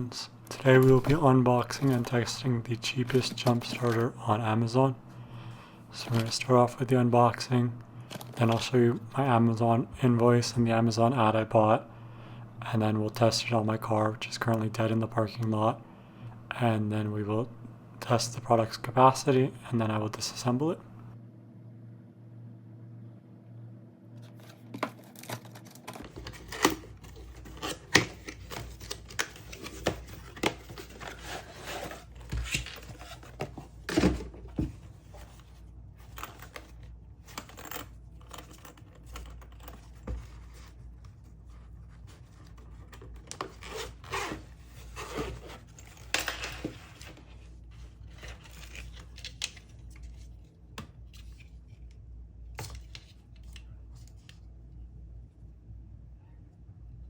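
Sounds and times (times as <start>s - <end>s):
packaging tearing and rustling: 24.4s - 33.4s.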